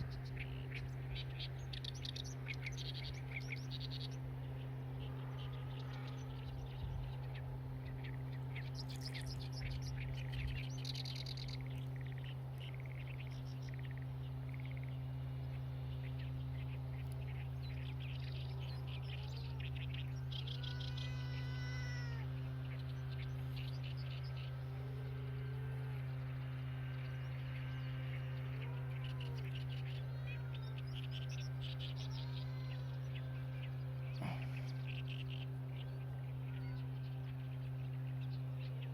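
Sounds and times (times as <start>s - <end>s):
songbirds chirping and singing: 0.0s - 38.9s
steady low hum: 0.0s - 38.9s.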